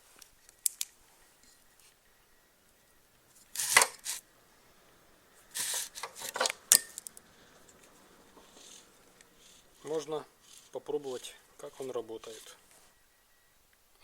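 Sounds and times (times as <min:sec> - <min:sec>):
metal parts and tools clattering: 0:05.6 - 0:07.2.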